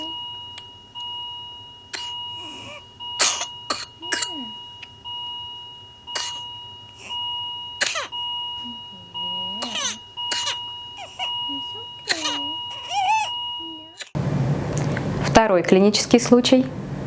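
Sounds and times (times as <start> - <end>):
steady high tone: 0.0 - 14.0
child harsh noisy breathing: 2.0 - 2.9, 9.6 - 13.3
sharp coughs: 3.2 - 4.6, 6.1 - 6.5, 7.8 - 8.1, 9.7 - 10.7, 12.0 - 12.6.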